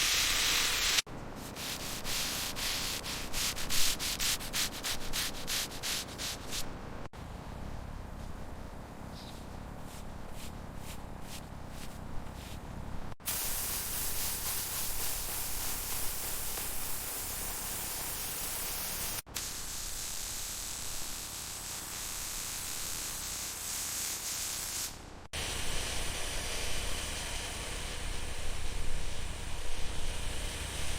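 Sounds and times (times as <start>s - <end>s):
spraying hiss: 0.0s - 6.6s, 13.2s - 30.9s.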